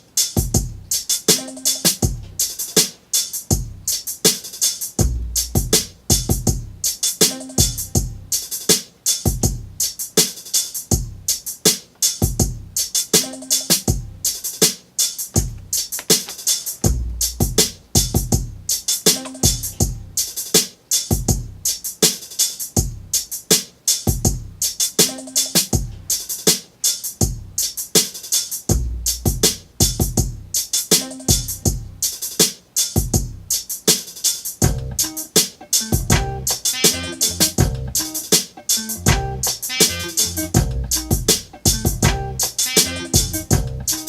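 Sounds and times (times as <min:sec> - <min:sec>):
hip-hop drum machine beat: 0:00.0 - 0:44.0.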